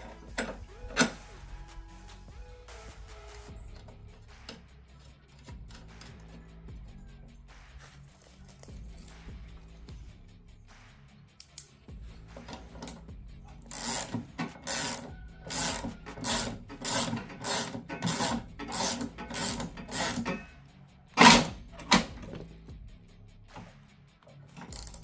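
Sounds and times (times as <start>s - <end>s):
socket ratchet rasping: 13.6s - 20.6s, 24.5s - 25.0s.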